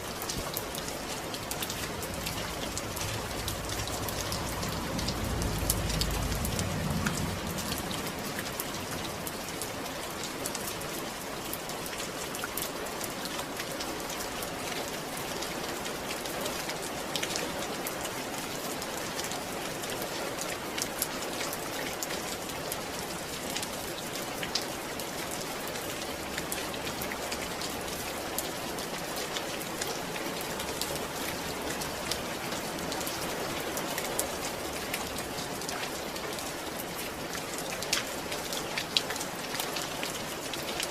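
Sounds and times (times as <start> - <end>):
steady rain falling: 0.0 - 40.9
low rumble: 1.2 - 9.6.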